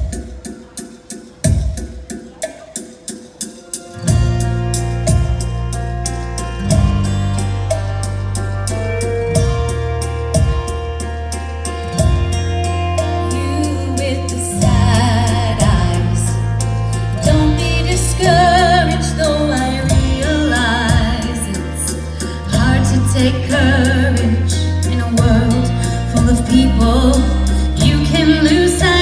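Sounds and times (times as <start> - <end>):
held bass notes: 4.0 - 29.0
person singing with vibrato: 12.2 - 29.0.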